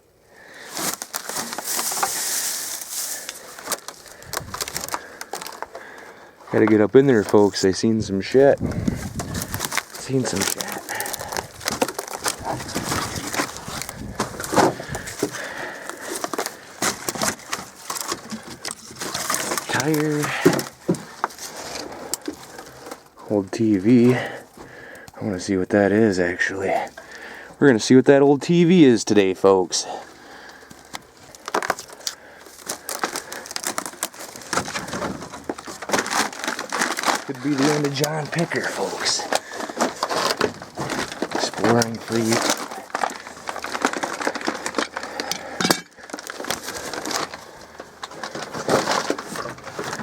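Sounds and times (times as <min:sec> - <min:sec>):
debris crackling: 0:00.4 - 0:27.5, 0:29.8 - 0:50.0
footsteps through junk: 0:00.4 - 0:50.0.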